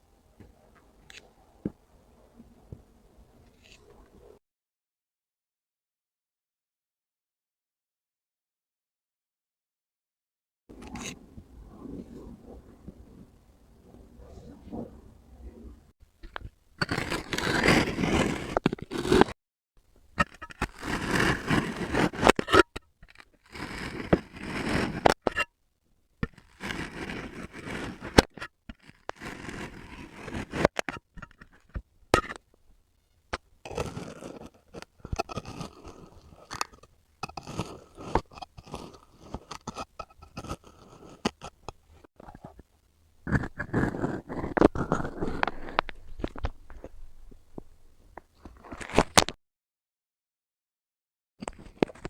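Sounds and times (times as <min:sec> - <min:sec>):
kinetic sand scraping: 0:16.8 - 0:19.4, 0:20.2 - 0:25.5, 0:26.2 - 0:31.0, 0:33.6 - 0:41.6.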